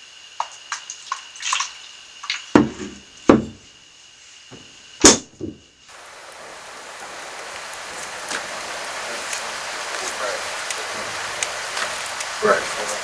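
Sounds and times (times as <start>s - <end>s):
steady hiss: 5.7s - 13.0s.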